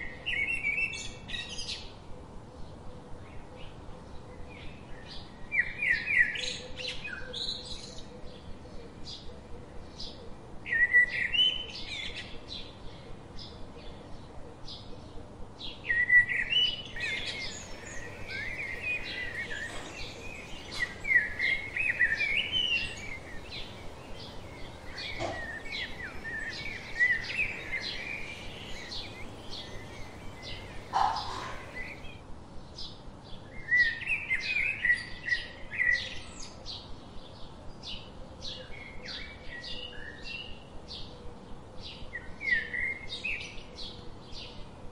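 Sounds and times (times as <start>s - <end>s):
birds chirping and warbling: 16.3s - 32.2s
low bird call: 16.9s - 32.2s.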